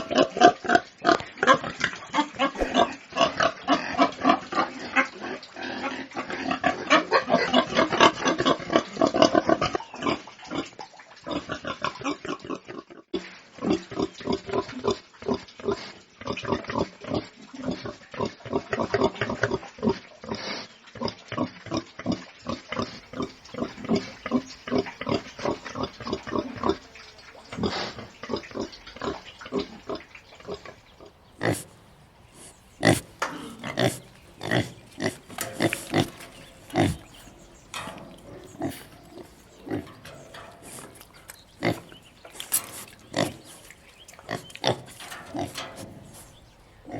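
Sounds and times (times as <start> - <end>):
pigs grunting: 0.0 - 0.8, 2.4 - 4.7, 22.7 - 46.9.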